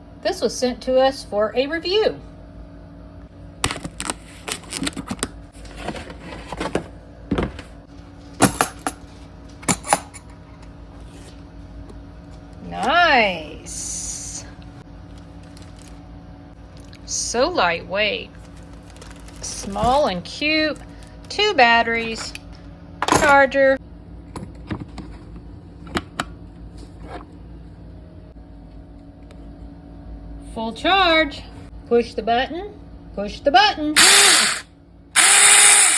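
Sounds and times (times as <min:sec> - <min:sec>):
steady low hum: 0:00.0 - 0:35.9
packaging rustling: 0:15.1 - 0:16.0, 0:18.4 - 0:20.1.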